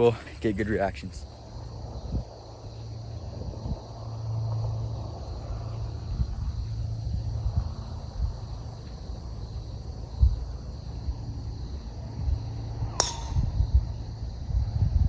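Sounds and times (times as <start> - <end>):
insect chorus: 0.0 - 15.0
wind buffeting microphone: 0.0 - 15.0.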